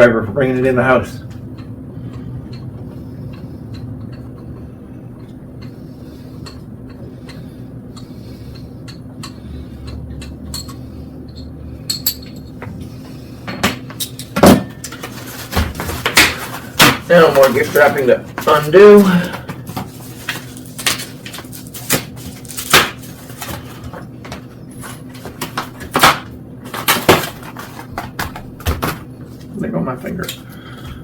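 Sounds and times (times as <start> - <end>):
steady low hum: 0.0 - 31.0
bike parts clicking and clinking: 6.4 - 12.7.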